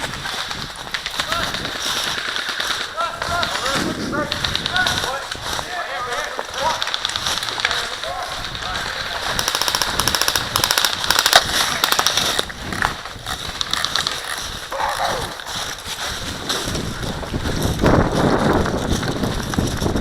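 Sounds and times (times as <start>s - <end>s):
airsoft gun automatic bursts: 1.1s - 3.6s, 9.1s - 12.4s.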